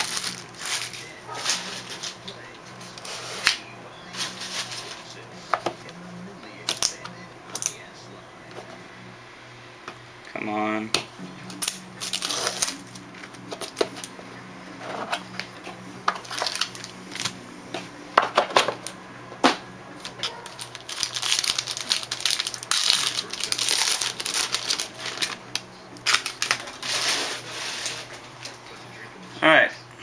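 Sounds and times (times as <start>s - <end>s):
packaging rustling and crinkling: 0.0s - 2.2s, 11.6s - 14.1s, 14.8s - 17.4s, 20.0s - 28.1s.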